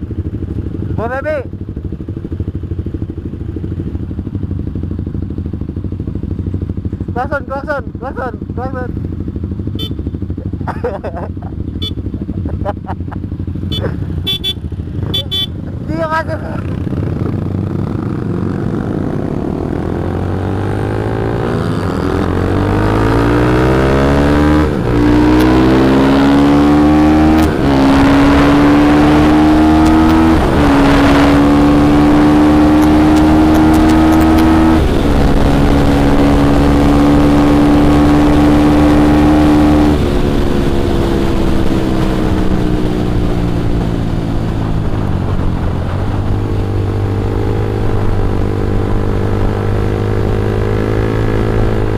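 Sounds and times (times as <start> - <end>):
motorcycle engine shifting gears: 11.4 - 51.9.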